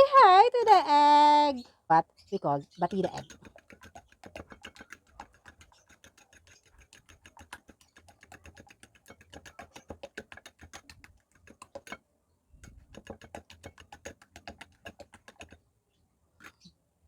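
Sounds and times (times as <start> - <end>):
utensil clicking against bowl: 2.9 - 12.0, 12.6 - 15.6.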